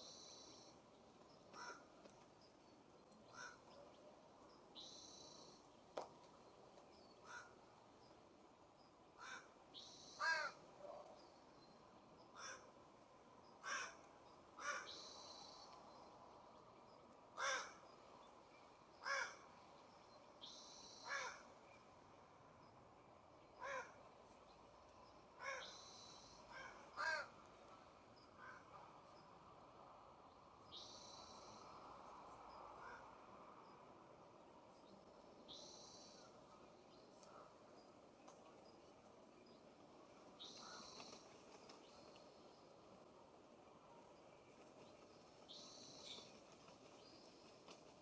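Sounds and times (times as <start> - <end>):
crow-like rasping calls: 1.5 - 1.9, 3.3 - 3.7, 7.2 - 7.6, 9.2 - 9.5, 10.2 - 10.6, 12.3 - 12.7, 13.6 - 14.0, 14.6 - 15.0, 17.4 - 17.8, 19.0 - 19.5, 21.0 - 21.5, 23.6 - 24.0, 25.4 - 25.8, 26.5 - 27.4, 28.4 - 28.8, 32.8 - 33.1.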